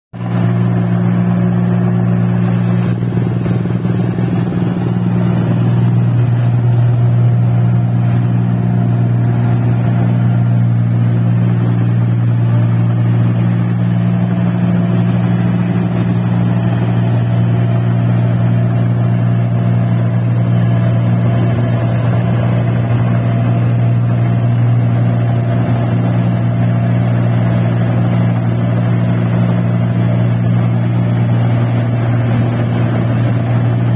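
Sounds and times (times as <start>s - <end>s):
harvester engine drone: 0.2s - 33.9s.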